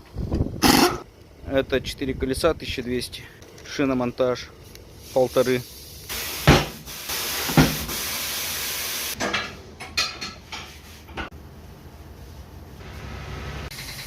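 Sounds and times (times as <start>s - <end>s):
compressed air hissing: 4.9s - 9.2s.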